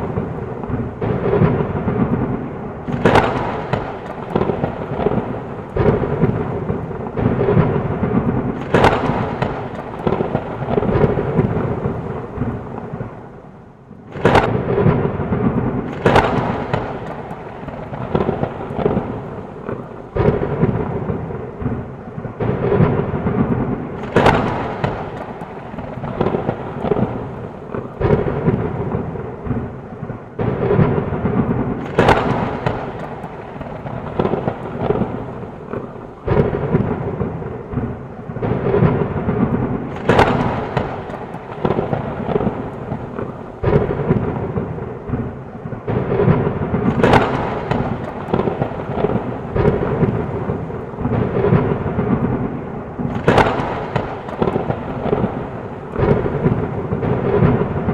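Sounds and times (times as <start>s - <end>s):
falling rain: 0.0s - 57.9s
rumbling thunder: 0.0s - 57.9s
sharp thunder cracks: 0.0s - 57.9s.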